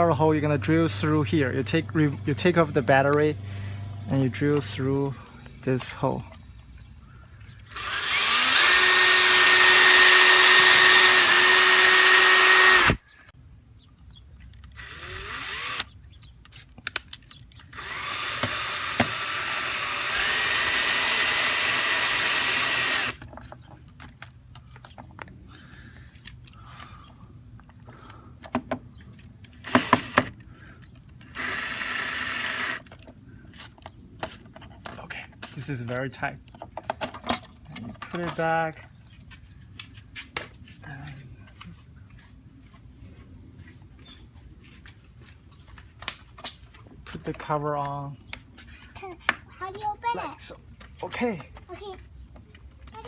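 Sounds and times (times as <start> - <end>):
power drill whining: 7.5 - 13.0, 14.7 - 15.9, 17.5 - 23.2, 29.4 - 30.3, 31.2 - 32.9.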